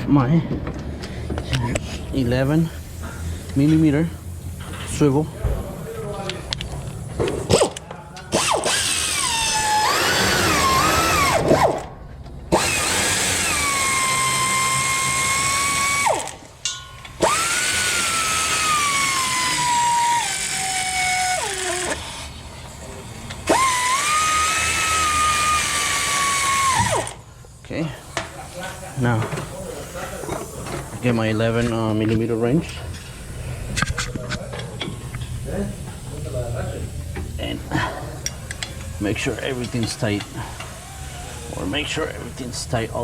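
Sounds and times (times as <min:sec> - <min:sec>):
power drill motor whine: 0:08.4 - 0:11.9, 0:12.5 - 0:16.4, 0:17.2 - 0:22.4, 0:23.4 - 0:27.2, 0:38.8 - 0:42.0.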